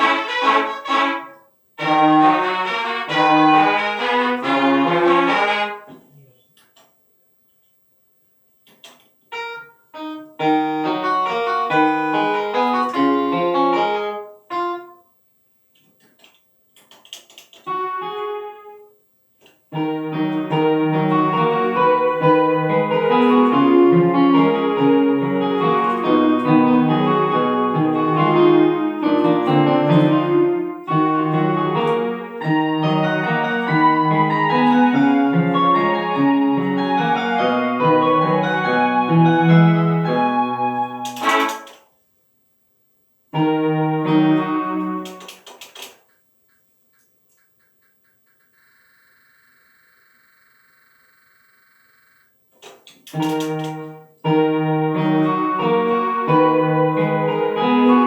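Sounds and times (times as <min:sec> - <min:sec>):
piano music: 0:00.0 - 0:05.8, 0:09.3 - 0:15.0, 0:17.7 - 0:18.9, 0:19.7 - 0:41.8, 0:43.4 - 0:45.4, 0:53.1 - 0:58.0.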